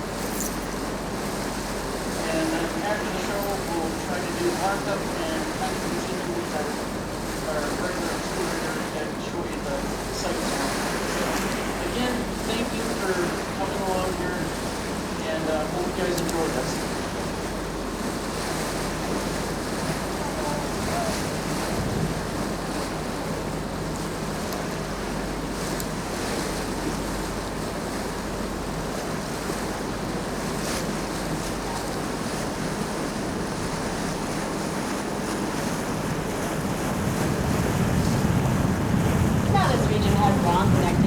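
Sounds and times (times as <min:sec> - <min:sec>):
water rushing along boat hull: 0:00.0 - 0:41.0
wind buffeting microphone: 0:16.8 - 0:24.0, 0:34.5 - 0:41.0.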